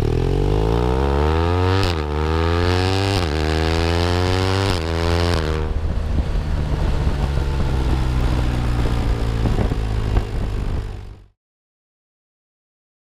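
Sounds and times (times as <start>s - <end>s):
motorcycle engine idling: 5.7s - 11.3s.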